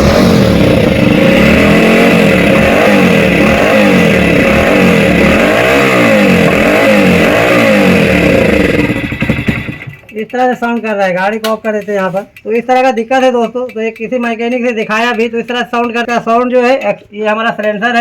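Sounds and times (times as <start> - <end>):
motorcycle engine revving: 0.0 - 10.2.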